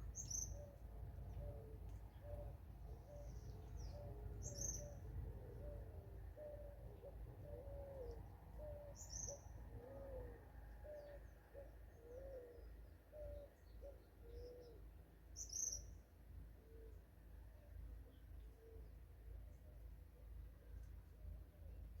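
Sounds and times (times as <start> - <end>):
bird cooing: 0.0 - 14.9
bird high chirps: 3.1 - 5.0.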